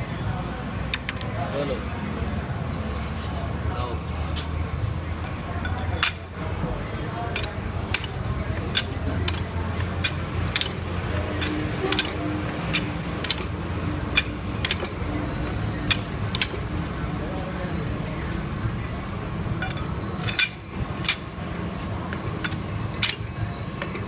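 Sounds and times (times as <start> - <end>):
metal tools clinking: 5.6 - 6.3, 6.9 - 16.8, 19.6 - 21.4, 22.1 - 24.0.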